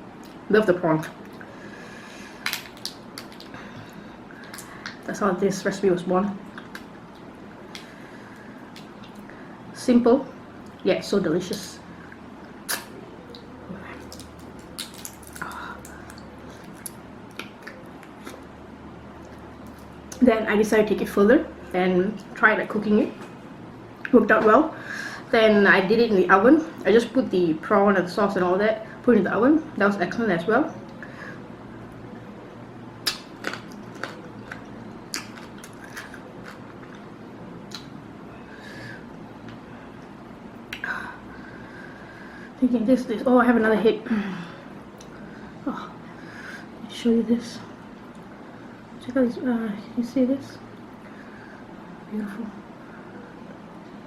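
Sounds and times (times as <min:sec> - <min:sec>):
wet chewing and biting: 0:33.0 - 0:37.9.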